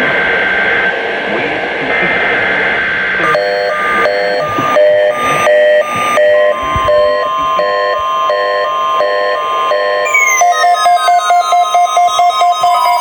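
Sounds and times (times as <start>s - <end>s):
radio static hiss: 0.0s - 10.3s
electronic alert beeps: 3.2s - 13.0s
two steady tones: 3.2s - 13.0s.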